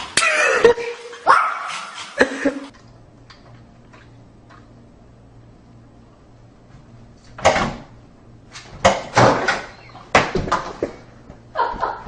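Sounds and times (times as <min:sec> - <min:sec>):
dog yelping and barking: 0:01.2 - 0:01.9.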